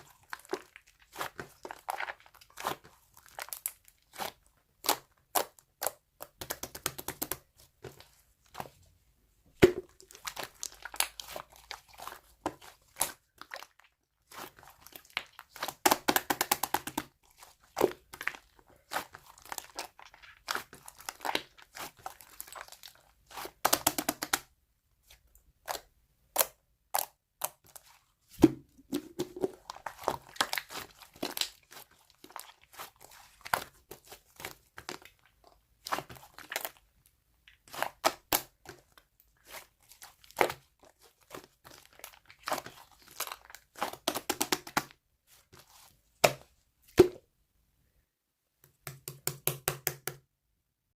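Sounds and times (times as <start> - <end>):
slime crackling and crunching: 0.0 - 7.4, 9.8 - 24.5, 28.9 - 36.9, 37.5 - 46.4.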